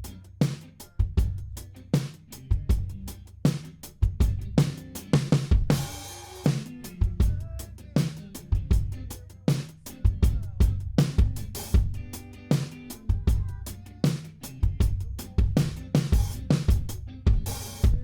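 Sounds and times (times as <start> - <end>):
drum kit beat: 0.0 - 18.0
sustained bass line: 6.8 - 9.3, 10.0 - 18.0.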